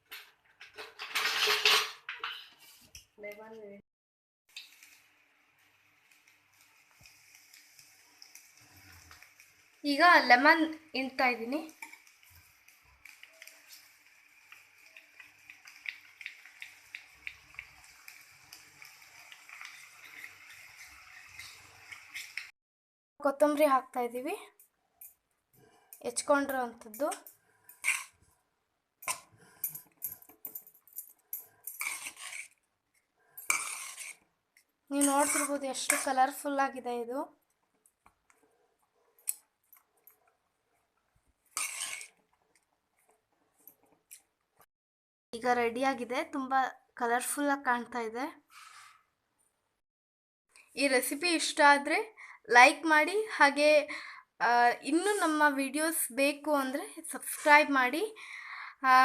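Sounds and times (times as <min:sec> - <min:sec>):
spoon scraping through rice: 0:27.1 - 0:28.3, 0:31.2 - 0:32.6, 0:33.3 - 0:34.3, 0:34.9 - 0:36.2, 0:41.5 - 0:42.2, 0:48.5 - 0:49.0.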